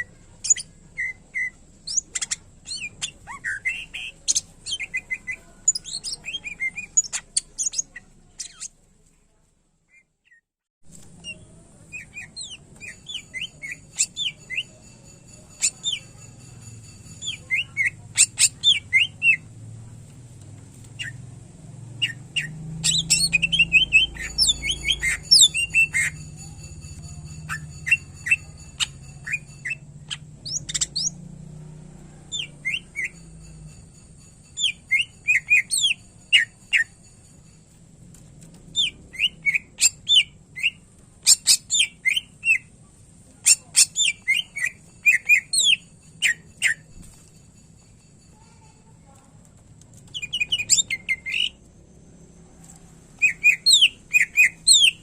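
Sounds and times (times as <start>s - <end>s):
bird singing chirps and whistles: 22.0s - 26.3s, 38.8s - 42.7s, 50.1s - 51.6s, 53.2s - 55.0s.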